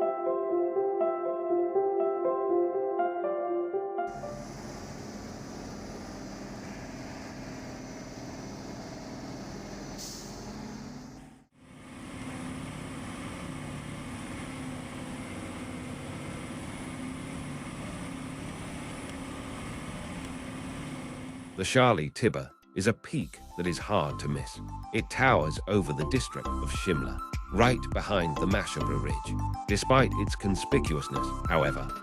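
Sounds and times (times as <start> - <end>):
road noise rushing: 4.1 - 21.6
vehicle engine hum: 4.1 - 21.6.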